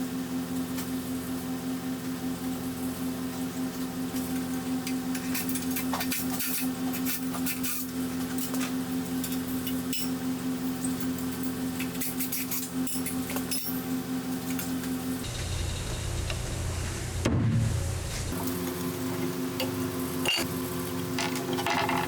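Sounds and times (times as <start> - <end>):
machine hum: 13.8 - 22.0.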